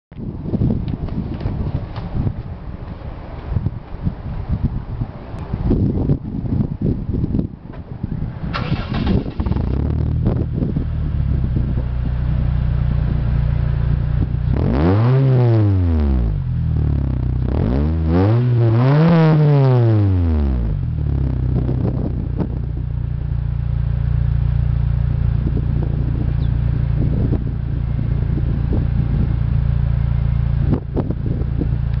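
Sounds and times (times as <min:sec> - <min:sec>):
car engine starting and idling: 0:07.8 - 0:18.8, 0:19.7 - 0:32.0
car engine revving: 0:08.5 - 0:22.6.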